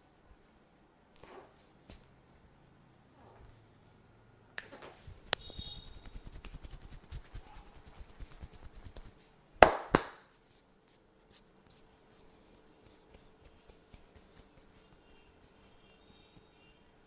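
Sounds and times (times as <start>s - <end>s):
quick hand taps: 5.2s - 10.2s
sharp hand slaps: 9.6s - 10.3s.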